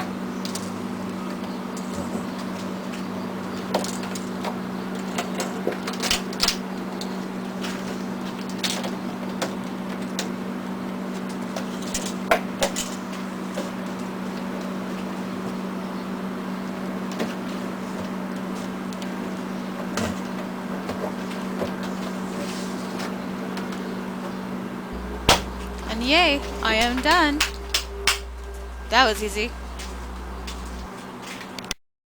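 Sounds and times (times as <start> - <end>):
steady low hum: 24.8 - 31.0.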